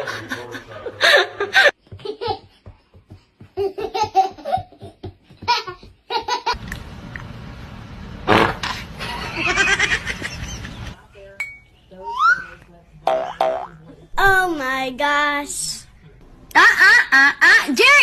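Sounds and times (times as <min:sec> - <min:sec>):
laughter: 0:00.0 - 0:02.2, 0:09.0 - 0:11.0, 0:16.6 - 0:17.7.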